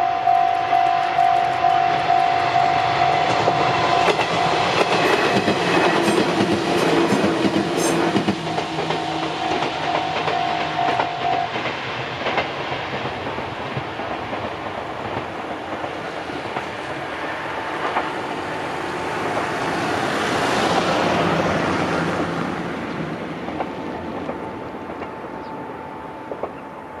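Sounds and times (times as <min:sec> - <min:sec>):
electric train running: 0:00.0 - 0:27.0.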